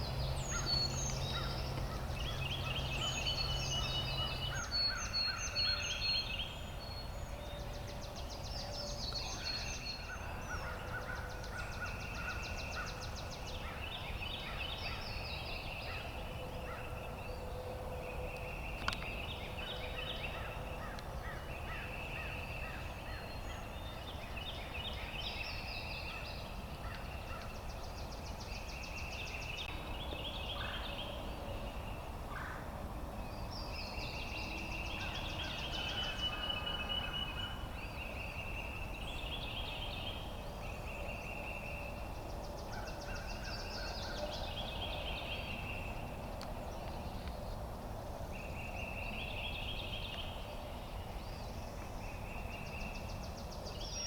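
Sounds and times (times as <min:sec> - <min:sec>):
low wind rumble: 0:00.0 - 0:54.0.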